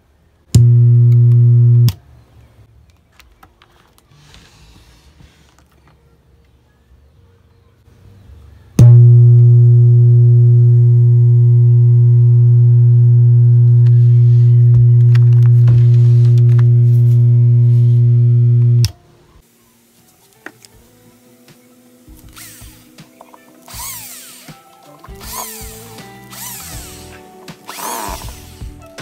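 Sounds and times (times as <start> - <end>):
low mains hum from speaker: 0.0 - 4.1, 5.5 - 22.1.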